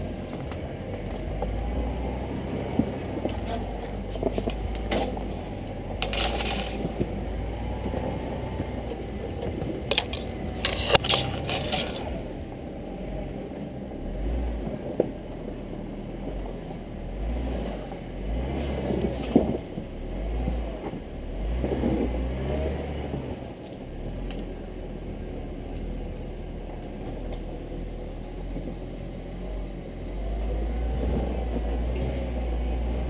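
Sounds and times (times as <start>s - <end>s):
off-road vehicle engine rumbling: 0.0s - 33.0s
sharp clanks and scrapes: 2.8s - 7.2s, 9.4s - 12.2s.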